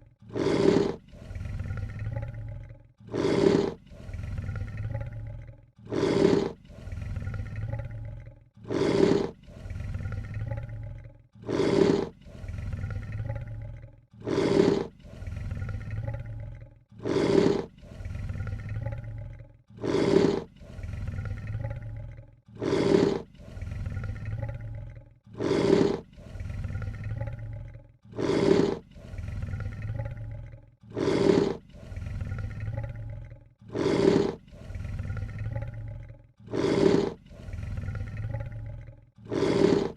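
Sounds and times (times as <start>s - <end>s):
lion hissing and snarling: 0.0s - 5.2s, 5.8s - 10.8s, 11.4s - 13.6s, 14.2s - 39.9s.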